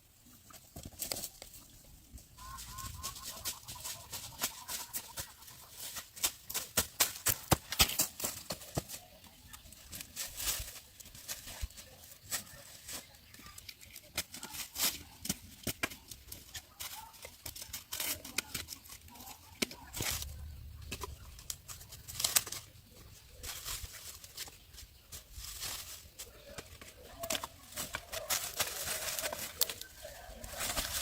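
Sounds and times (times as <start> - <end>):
dry leaves rustling: 0.1 - 31.0
corn stalks snapping: 6.0 - 8.8, 13.4 - 22.7, 25.5 - 31.0.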